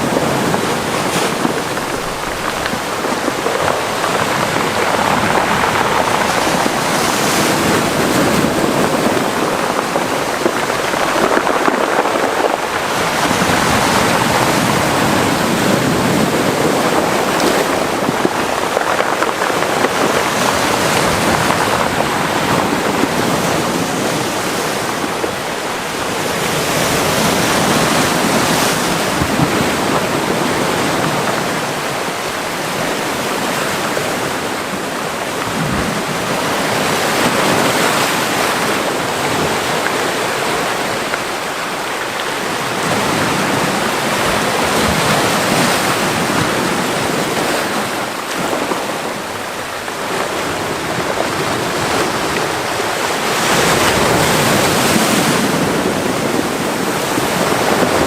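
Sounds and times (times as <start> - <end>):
waves breaking on rocks: 0.0 - 58.0.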